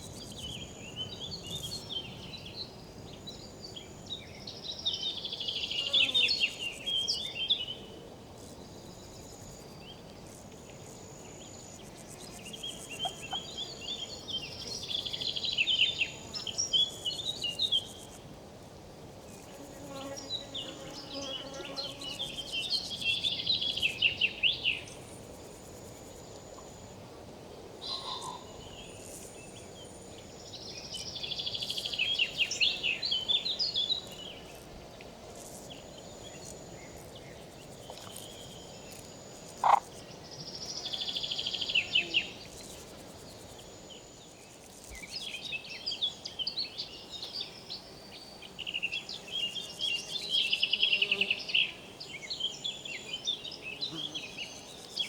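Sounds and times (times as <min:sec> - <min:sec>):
insects rattling chirps: 0:36.4 - 0:40.0.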